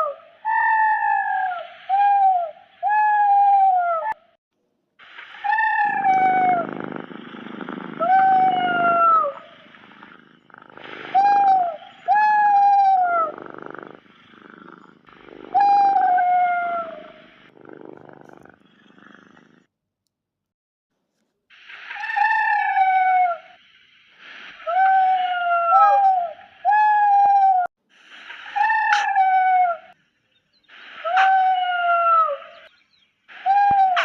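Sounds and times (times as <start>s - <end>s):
high falling creature calls: 5.3s - 6.7s, 8.0s - 9.6s, 28.5s - 29.9s, 31.0s - 32.6s
rough noisy growl: 6.0s - 11.2s, 13.2s - 15.7s, 17.2s - 19.7s.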